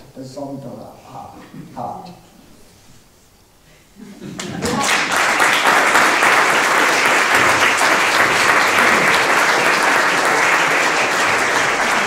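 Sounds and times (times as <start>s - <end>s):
audience applauding: 4.4s - 12.0s.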